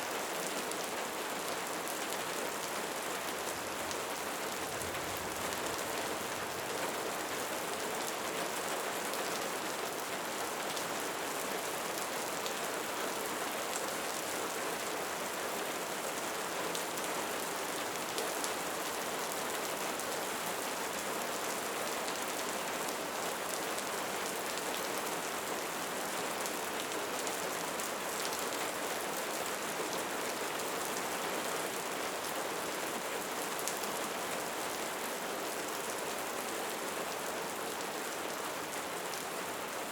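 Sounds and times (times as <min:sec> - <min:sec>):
light rain falling: 0:00.0 - 0:39.9.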